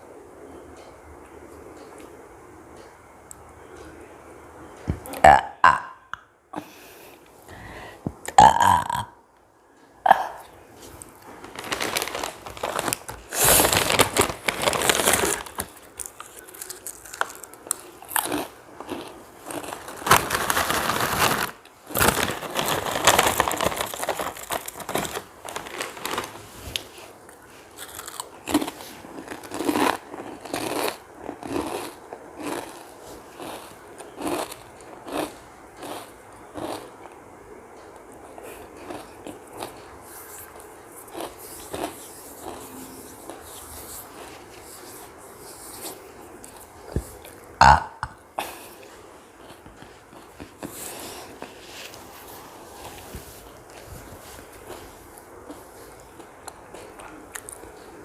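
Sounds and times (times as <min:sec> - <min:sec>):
person burping: 0:05.1 - 0:06.2, 0:08.3 - 0:09.2, 0:10.0 - 0:10.5, 0:47.6 - 0:48.2
chip packet crinkling: 0:11.0 - 0:36.9
potato chips crunching: 0:11.2 - 0:36.9, 0:38.8 - 0:39.8, 0:40.5 - 0:46.6.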